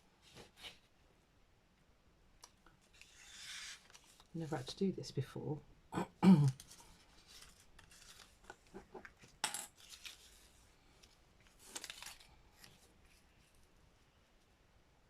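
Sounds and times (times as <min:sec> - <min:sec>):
paper rustling: 0:02.8 - 0:04.8, 0:06.5 - 0:13.7.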